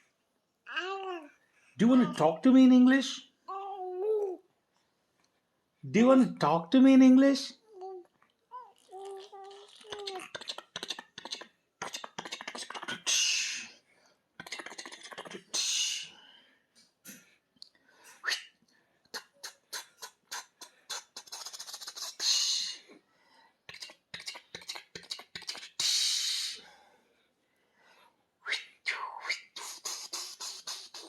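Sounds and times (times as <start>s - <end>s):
lip and tongue clicks: 23.7s - 25.8s.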